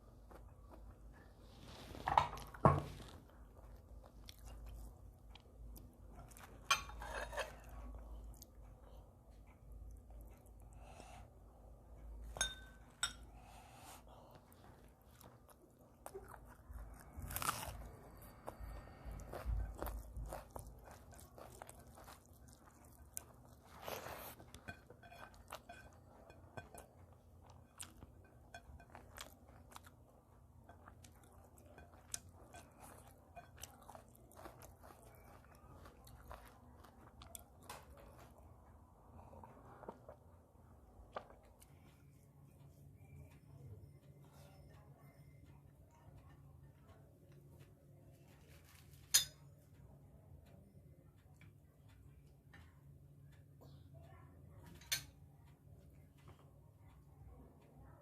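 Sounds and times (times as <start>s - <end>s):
person chewing food: 0.0s - 43.4s.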